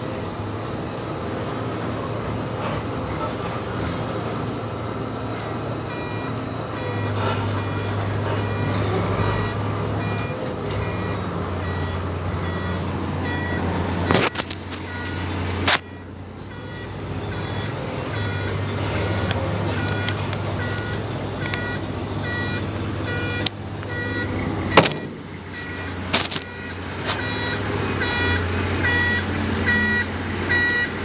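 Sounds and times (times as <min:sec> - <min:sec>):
heavy diesel machinery running: 0:00.0 - 0:31.0
two-tone backup alarm beeping: 0:04.6 - 0:31.0
sharp knocks: 0:24.7 - 0:26.4.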